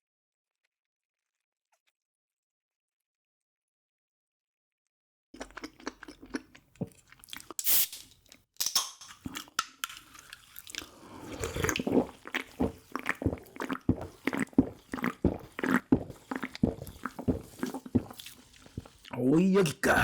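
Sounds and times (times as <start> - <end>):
person chewing: 5.4 - 8.4, 9.1 - 20.0.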